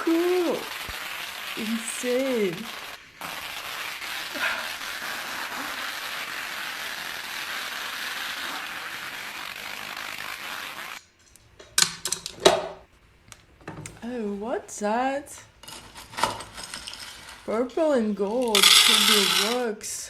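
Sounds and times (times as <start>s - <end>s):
bubble-wrap popping: 0.0s - 11.1s
sharp clicks and clinks: 18.4s - 19.6s.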